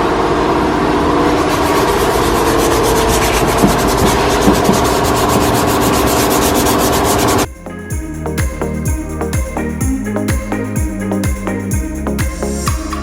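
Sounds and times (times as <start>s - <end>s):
sandpaper rubbing: 1.5s - 7.5s.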